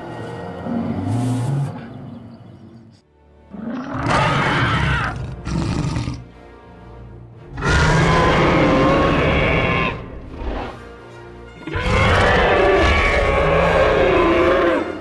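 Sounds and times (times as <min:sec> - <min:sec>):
dinosaur roars: 0:03.5 - 0:06.3, 0:07.5 - 0:10.1, 0:11.6 - 0:15.0.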